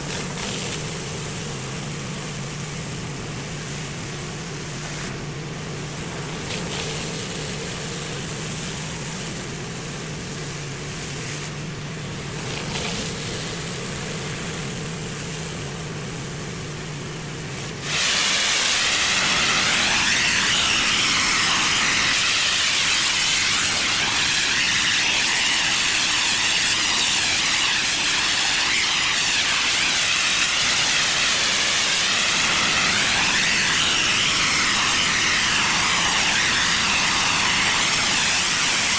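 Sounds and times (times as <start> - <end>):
high-pressure water spray hiss: 0.0 - 38.9
pressure washer machine hum: 11.8 - 38.9.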